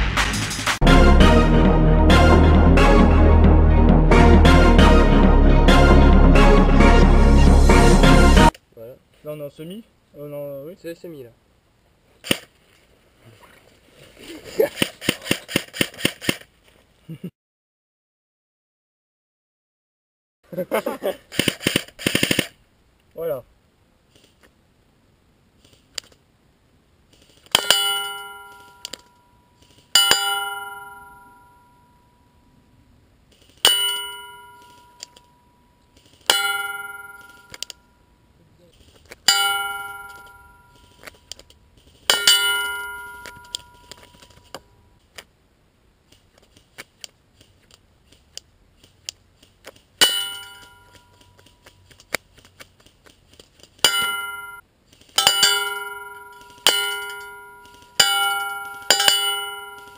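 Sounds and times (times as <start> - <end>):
metal target clanging: 27.5 - 29.1, 30.0 - 31.7, 33.6 - 35.1, 36.3 - 37.8, 39.3 - 41.0, 42.1 - 44.6, 50.0 - 51.1, 53.8 - 54.6, 55.2 - 59.9.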